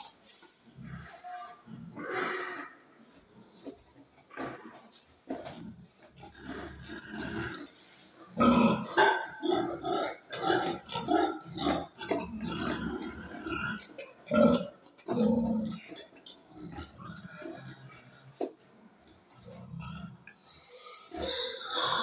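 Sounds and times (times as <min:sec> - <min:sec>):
pigs grunting: 0:00.7 - 0:22.0.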